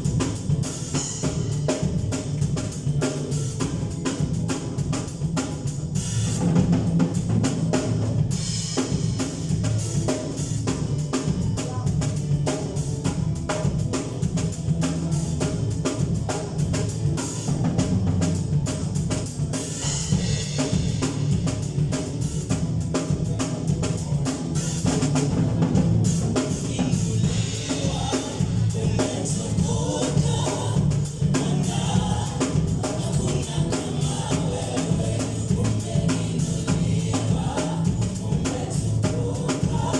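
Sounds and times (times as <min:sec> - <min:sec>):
drum kit beat: 0:00.0 - 0:39.9
gospel band playing: 0:00.0 - 0:39.9
person singing: 0:26.4 - 0:39.9.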